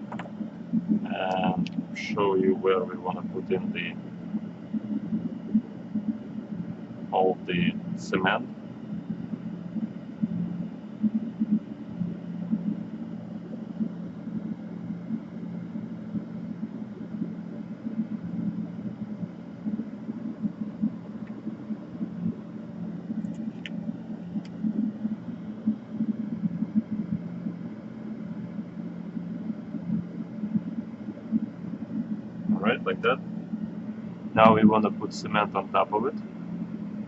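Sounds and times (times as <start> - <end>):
low background hum: 0.0 - 37.0.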